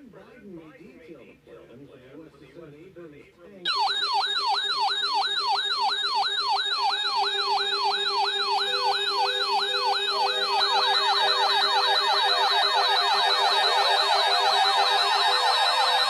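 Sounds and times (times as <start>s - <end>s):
falling siren-like alarm sweep: 3.7s - 16.0s.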